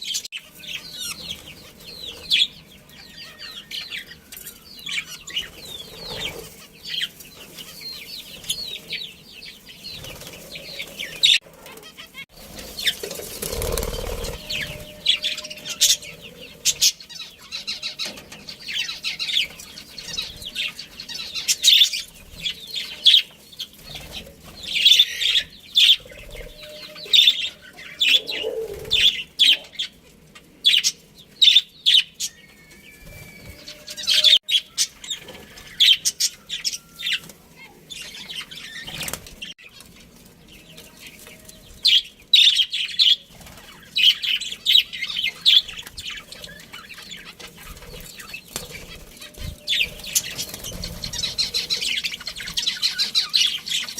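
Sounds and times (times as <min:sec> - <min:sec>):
budgies chirping: 0:00.0 - 0:53.9
wings flapping: 0:05.4 - 0:06.7, 0:09.9 - 0:16.8, 0:38.6 - 0:39.9, 0:45.7 - 0:53.3.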